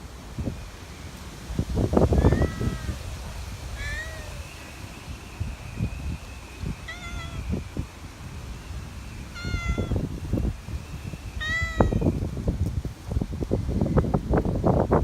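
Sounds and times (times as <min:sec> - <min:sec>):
wind rumble on microphone: 0:00.0 - 0:15.0
animal mewing: 0:02.2 - 0:03.0, 0:03.8 - 0:04.5, 0:06.9 - 0:07.4, 0:09.4 - 0:10.0.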